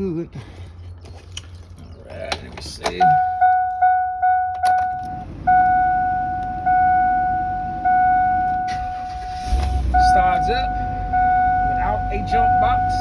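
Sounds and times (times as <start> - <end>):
ignition click: 2.8 - 6.8
dashboard warning chime beeps: 2.9 - 13.0
engine starting and idling: 7.4 - 11.5.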